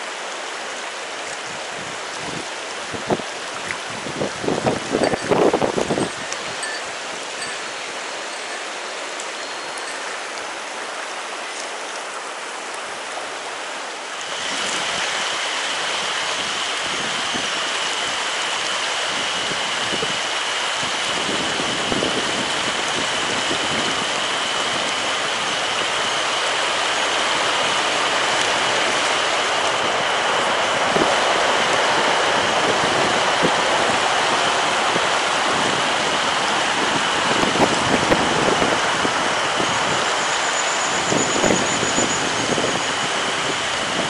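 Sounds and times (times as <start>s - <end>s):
stream rushing over rocks: 0.0s - 44.0s
steady high-pitched tone: 39.4s - 43.6s.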